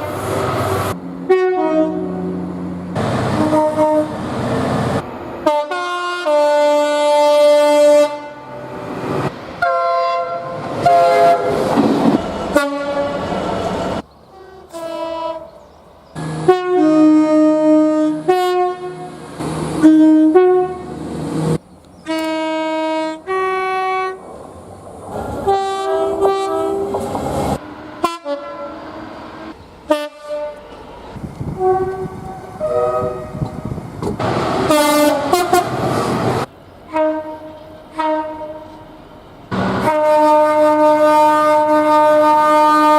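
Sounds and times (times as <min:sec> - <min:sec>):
train horn blasts: 0:01.3 - 0:02.4, 0:03.3 - 0:04.3, 0:05.4 - 0:08.7, 0:09.6 - 0:11.6, 0:12.4 - 0:13.3, 0:14.3 - 0:15.6, 0:16.2 - 0:19.2, 0:19.8 - 0:21.0, 0:22.0 - 0:24.2, 0:25.4 - 0:29.0, 0:29.9 - 0:30.8, 0:31.5 - 0:33.6, 0:34.7 - 0:35.8, 0:36.9 - 0:38.9, 0:39.6 - 0:42.9.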